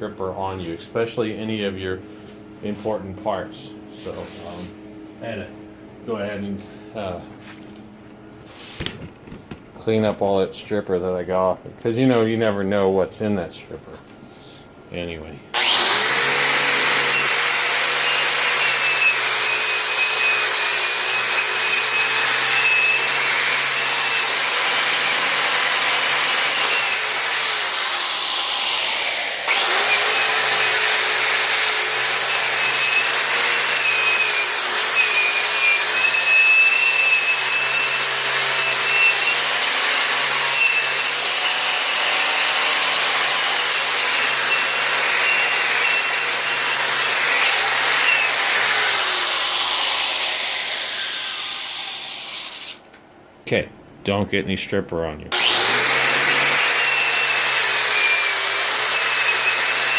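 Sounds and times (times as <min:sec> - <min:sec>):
electric grinder motor whine: 0:15.6 - 0:51.6, 0:55.3 - 0:59.9.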